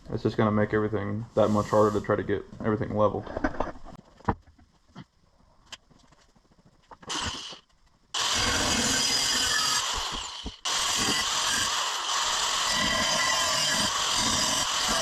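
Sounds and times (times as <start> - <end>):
angle grinder cutting steel pipe: 8.2 - 15.0.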